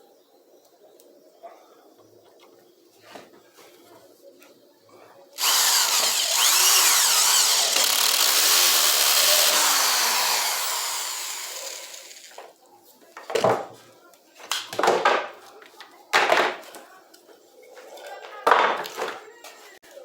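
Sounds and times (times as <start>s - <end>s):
power tool cutting wood: 5.4s - 12.4s.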